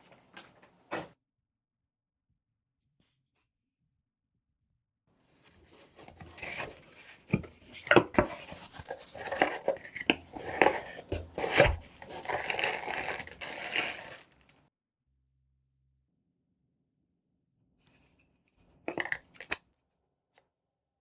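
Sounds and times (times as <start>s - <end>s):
packaging crinkling and rustling: 5.7s - 14.6s.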